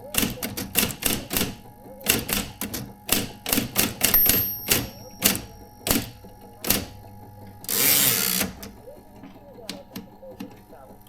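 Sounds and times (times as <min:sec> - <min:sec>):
electric typewriter type strikes: 0:00.0 - 0:10.6
typewriter mechanical whirr: 0:00.0 - 0:10.9.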